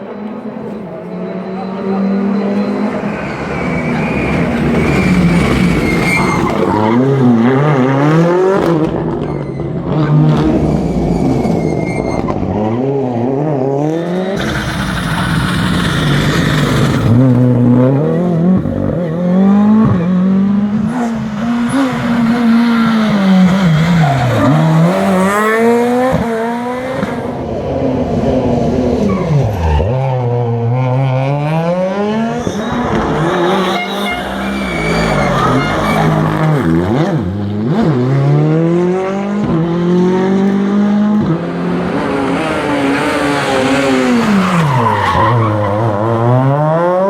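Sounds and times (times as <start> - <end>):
rally car engine revving: 0.0 - 47.0
rushing noise: 13.8 - 18.2.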